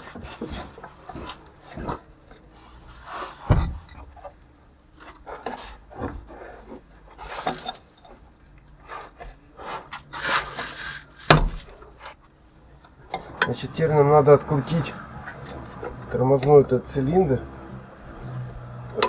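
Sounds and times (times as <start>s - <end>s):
metal parts rubbing and scraping: 10.1s - 11.3s.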